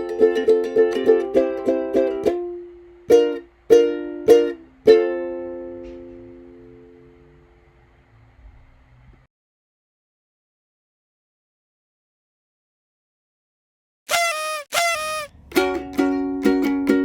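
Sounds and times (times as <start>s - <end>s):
plucked string instrument: 0.0s - 6.2s, 15.3s - 17.0s.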